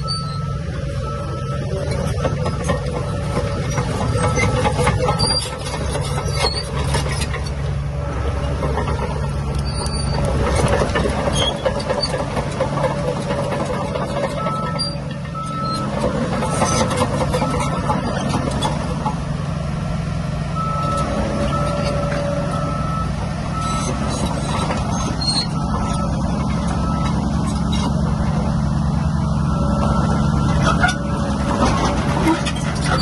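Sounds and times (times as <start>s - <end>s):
reversing alarm beeping: 0.0s - 5.6s, 13.9s - 18.2s, 20.6s - 27.7s, 29.1s - 31.5s
heavy diesel engine under load: 0.0s - 33.0s.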